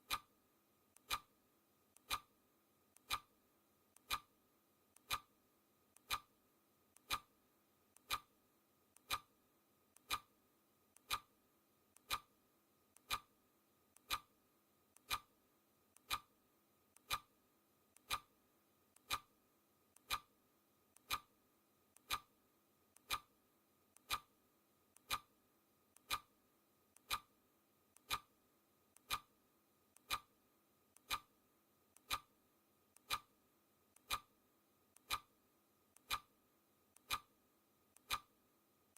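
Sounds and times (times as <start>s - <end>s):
clock ticking: 0.0s - 0.3s, 0.9s - 1.3s, 1.9s - 2.3s, 3.0s - 3.3s, 3.9s - 4.3s, 4.9s - 5.3s, 5.9s - 6.3s, 6.9s - 7.3s, 7.9s - 8.3s, 8.9s - 9.3s, 9.9s - 10.3s, 10.9s - 11.3s, 11.9s - 12.3s, 12.9s - 13.3s, 13.9s - 14.3s, 14.9s - 15.3s, 15.9s - 16.3s, 16.9s - 17.3s, 17.9s - 18.3s, 18.9s - 19.3s, 20.0s - 20.3s, 20.9s - 21.3s, 21.9s - 22.3s, 22.9s - 23.3s, 23.9s - 24.3s, 25.0s - 25.3s, 26.0s - 26.3s, 27.0s - 29.3s, 30.0s - 30.3s, 31.0s - 31.3s, 32.0s - 32.3s, 33.0s - 33.3s, 34.0s - 34.3s, 35.0s - 35.3s, 36.0s - 36.4s, 37.0s - 37.4s, 38.0s - 38.3s.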